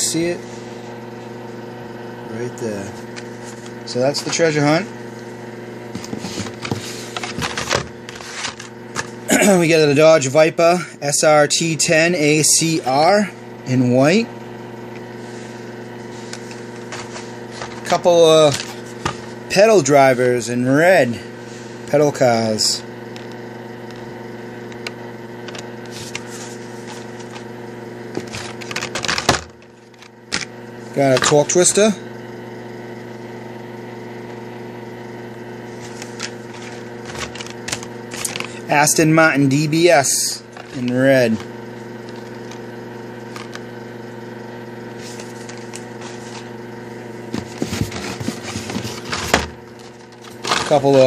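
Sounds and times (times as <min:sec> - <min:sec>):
steady electrical hum: 0:00.0 - 0:51.0
blister packs knocking and rustling: 0:35.8 - 0:38.6.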